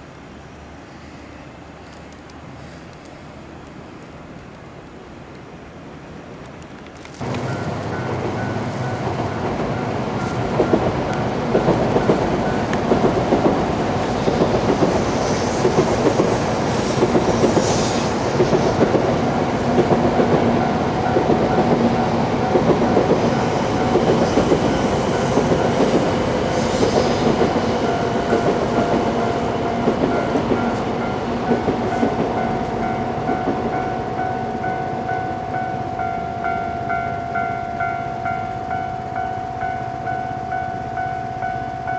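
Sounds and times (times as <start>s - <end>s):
crossing warning bell ringing: 7.2s - 13.8s, 19.4s - 41.9s
train wheels clattering over rails: 7.2s - 33.8s.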